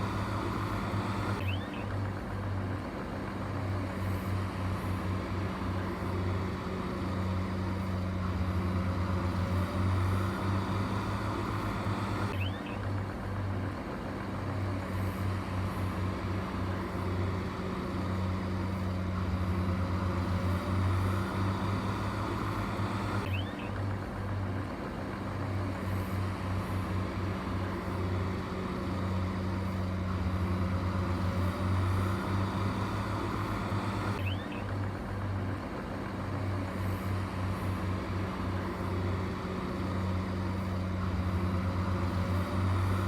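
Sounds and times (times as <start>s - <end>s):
construction machine engine humming: 0.0s - 43.0s.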